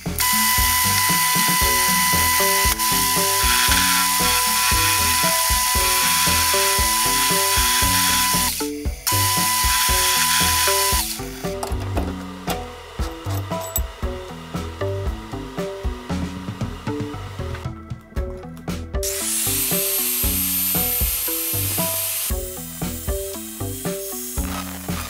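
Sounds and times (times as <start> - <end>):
power tool whining: 0.0 - 11.8, 19.0 - 25.0
background music: 0.0 - 25.0.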